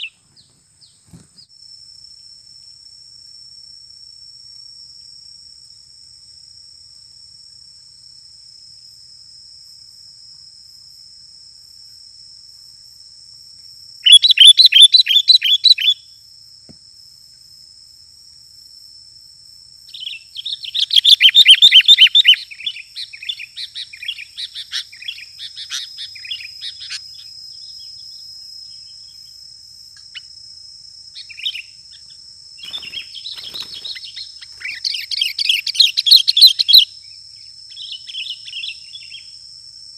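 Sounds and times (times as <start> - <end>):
high insect drone: 0.0 - 39.9
bird calling in chattering bursts: 32.6 - 36.8.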